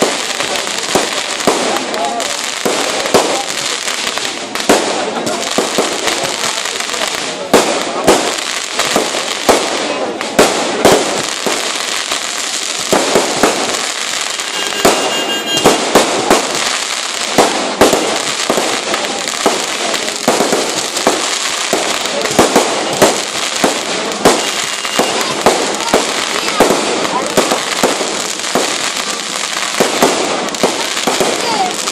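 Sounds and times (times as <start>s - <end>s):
fireworks bangs and crackling: 0.0s - 31.9s
high firework whistle: 14.1s - 16.0s, 24.2s - 25.4s.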